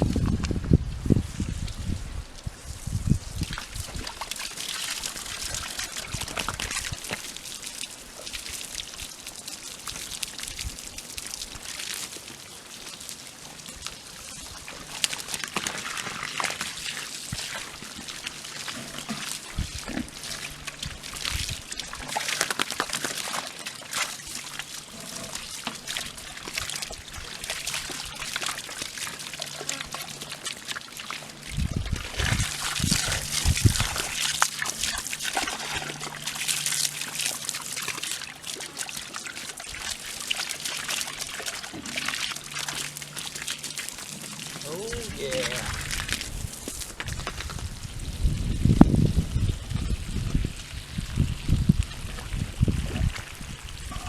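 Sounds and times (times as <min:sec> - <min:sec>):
water trickling and pouring: 0:01.4 - 0:54.0
pigs moving about: 0:14.8 - 0:31.4
pigs grunting: 0:24.8 - 0:26.2.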